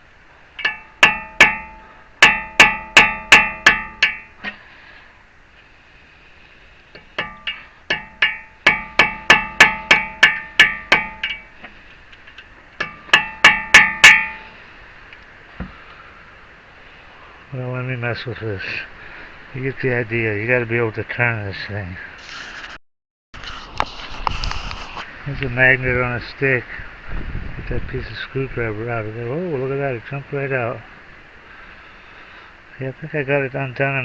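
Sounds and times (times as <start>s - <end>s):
hammer striking metal chisel: 0.6s - 4.6s, 7.0s - 11.7s, 12.8s - 14.5s.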